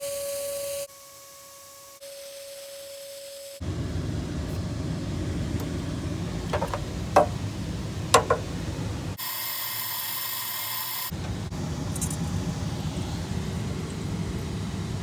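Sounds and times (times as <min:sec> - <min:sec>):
vehicle road noise rumble: 0:03.6 - 0:09.2.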